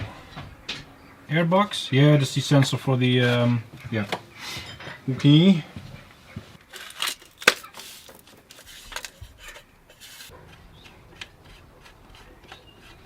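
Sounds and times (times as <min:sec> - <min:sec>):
car parts and tools rattling: 0:06.6 - 0:10.5.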